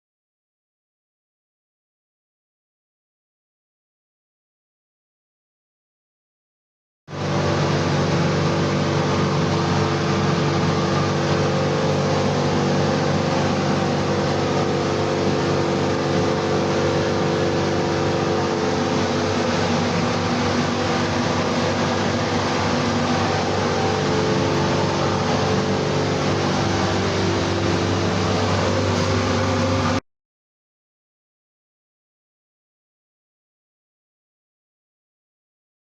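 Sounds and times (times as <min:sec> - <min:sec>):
constant low hum: 0:07.1 - 0:30.0
ventilation air rushing: 0:07.1 - 0:30.0.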